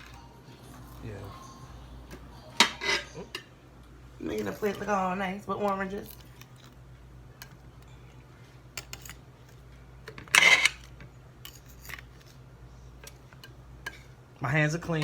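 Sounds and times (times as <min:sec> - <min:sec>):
low steady hum: 0:00.0 - 0:15.0.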